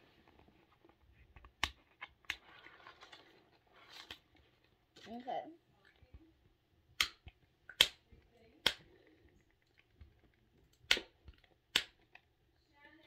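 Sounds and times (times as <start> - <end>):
plastic packaging snapping and clicking: 10.7 - 12.3.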